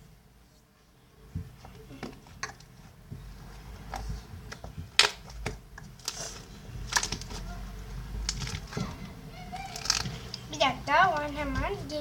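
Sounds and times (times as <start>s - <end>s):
small objects clicking and knocking: 9.6s - 10.5s.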